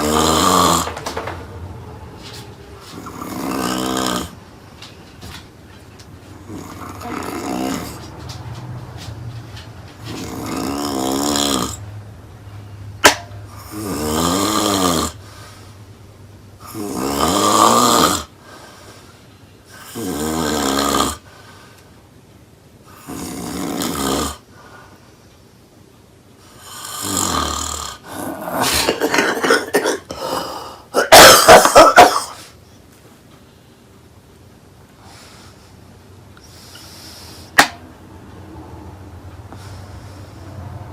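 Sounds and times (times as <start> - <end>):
woman snoring loudly: 0.0 - 1.0, 2.9 - 4.4, 6.4 - 8.0, 10.2 - 11.8, 13.5 - 15.3, 16.6 - 18.3, 19.7 - 21.2, 22.9 - 24.4, 26.6 - 32.0.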